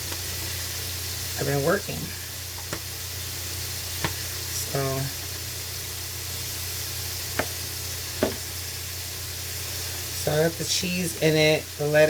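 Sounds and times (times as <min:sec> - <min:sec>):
chicken sizzling in a pan: 0:00.0 - 0:12.0.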